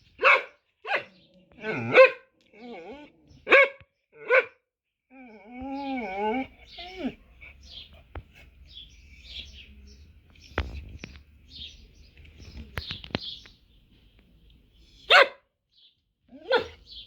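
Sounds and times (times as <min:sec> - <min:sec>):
dog barking: 0:00.0 - 0:02.3, 0:03.4 - 0:04.6, 0:15.1 - 0:15.5, 0:16.4 - 0:16.9
birds chirping: 0:00.0 - 0:17.0.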